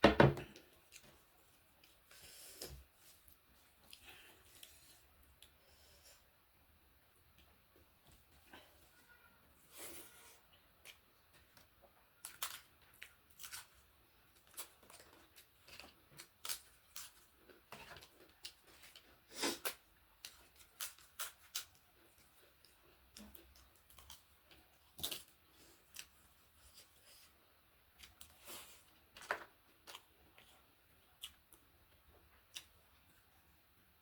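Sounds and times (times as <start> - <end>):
crisp chewing crunches: 12.2 - 27.3.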